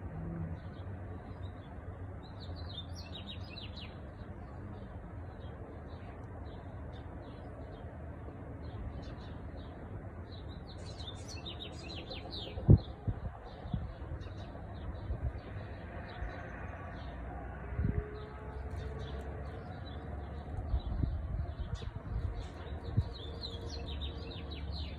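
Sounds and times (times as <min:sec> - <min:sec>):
small birds chirping: 0:10.3 - 0:15.2.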